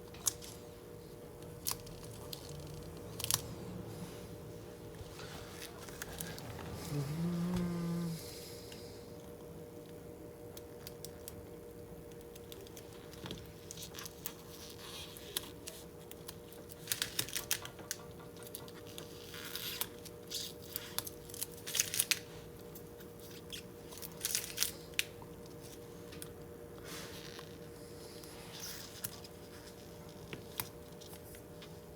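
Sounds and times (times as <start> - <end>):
faint steady hum: 0.0 - 31.9
plastic film crinkling and peeling: 1.6 - 3.8, 18.9 - 22.4, 23.2 - 25.8.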